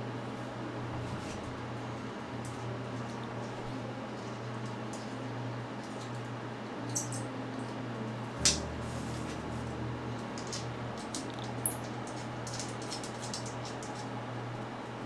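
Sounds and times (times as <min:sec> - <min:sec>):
steady low hum: 0:06.6 - 0:15.0.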